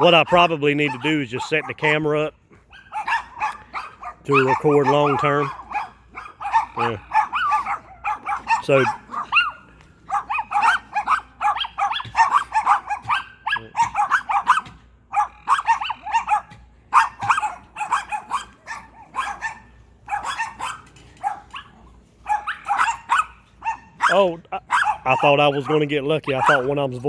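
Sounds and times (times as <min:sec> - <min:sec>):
dogs barking: 0:00.0 - 0:27.0.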